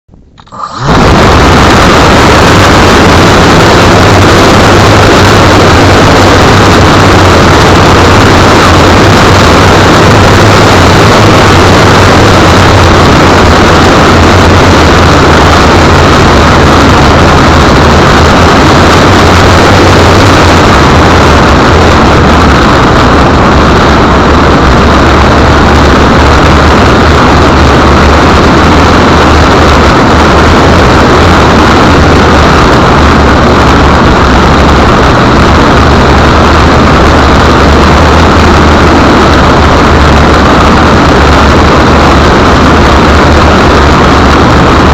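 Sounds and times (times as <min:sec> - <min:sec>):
low hum: 0:00.1 - 0:44.9.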